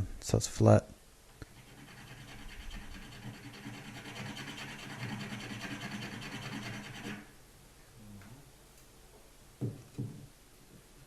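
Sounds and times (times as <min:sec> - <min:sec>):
tool scraping plaster: 0:01.4 - 0:07.3.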